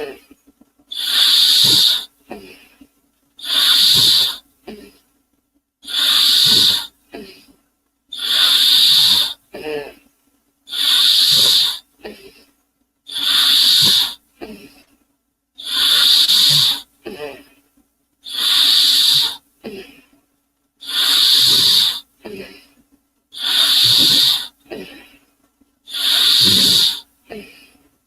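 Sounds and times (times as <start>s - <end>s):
person hissing like steam engine: 0.9s - 2.4s, 3.4s - 4.4s, 5.8s - 7.0s, 8.1s - 9.8s, 10.7s - 12.2s, 13.1s - 14.2s, 15.6s - 17.4s, 18.2s - 19.4s, 20.8s - 22.1s, 23.4s - 24.9s, 25.9s - 27.5s
throaty breath or grunt: 0.9s - 2.8s, 3.4s - 5.0s, 5.8s - 7.5s, 10.7s - 12.5s, 13.1s - 14.8s, 23.4s - 25.2s, 25.9s - 27.8s.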